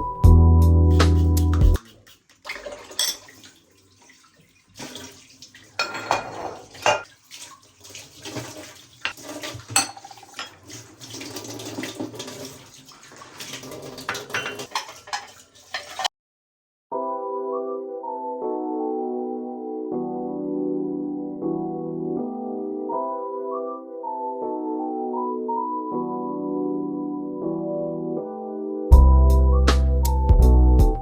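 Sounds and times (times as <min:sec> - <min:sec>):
running tap water: 0:00.9 - 0:16.1
dishes and cutlery clinking: 0:02.9 - 0:03.4, 0:05.8 - 0:07.1, 0:09.0 - 0:10.6, 0:14.0 - 0:16.1.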